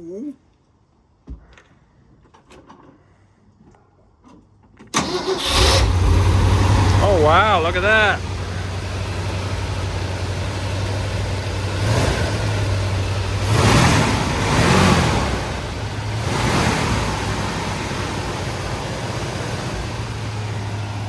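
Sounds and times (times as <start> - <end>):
engine idling: 5.0 - 21.0.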